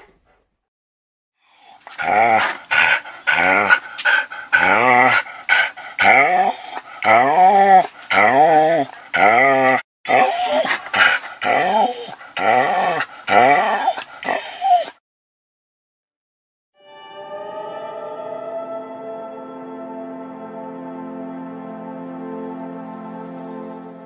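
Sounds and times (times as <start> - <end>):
dog whining and whimpering: 10.1 - 15.0.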